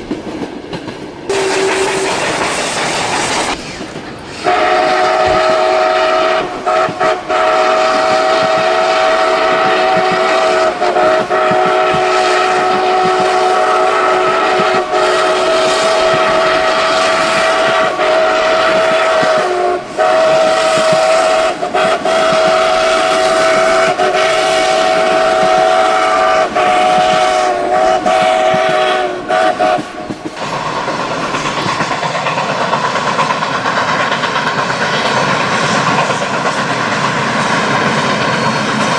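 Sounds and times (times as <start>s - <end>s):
train rumbling on rails: 0.0s - 38.9s
train horn chord: 1.3s - 2.3s, 4.4s - 29.9s.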